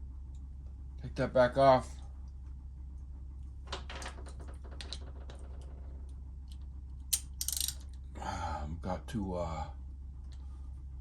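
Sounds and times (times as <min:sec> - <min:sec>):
small metal parts clicking: 0:06.5 - 0:08.0.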